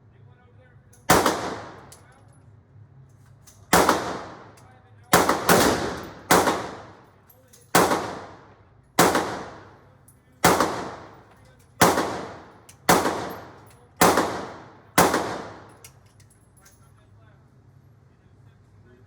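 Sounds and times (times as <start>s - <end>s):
echoing gunshots: 1.1s - 1.9s, 3.7s - 7.0s, 7.7s - 9.8s, 10.4s - 15.8s.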